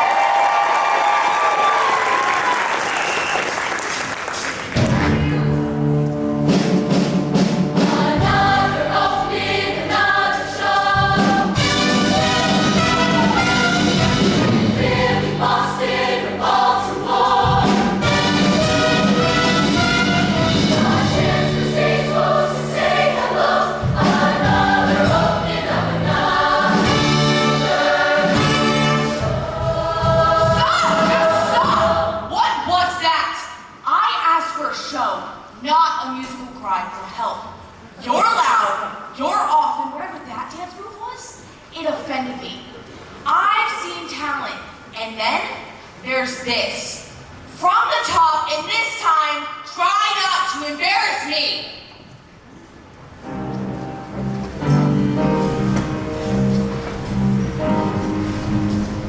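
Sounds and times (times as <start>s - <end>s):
audience cheering: 0.0s - 4.9s
instrumental accompaniment: 4.3s - 31.6s, 53.1s - 59.0s
choir singing: 7.6s - 32.3s.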